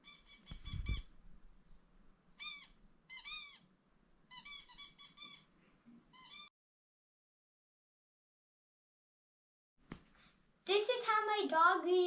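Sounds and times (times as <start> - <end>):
squeaky toy squeaking: 0.0 - 1.1, 2.4 - 3.7, 4.3 - 5.5, 6.1 - 6.5.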